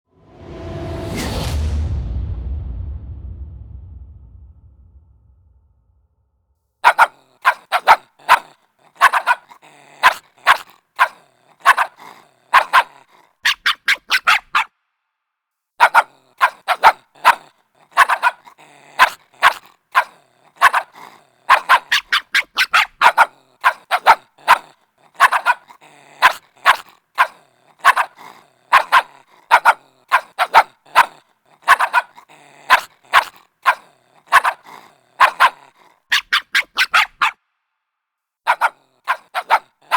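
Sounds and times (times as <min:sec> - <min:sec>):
puppy barking: 0:06.8 - 0:14.7, 0:15.8 - 0:37.4, 0:38.5 - 0:39.9.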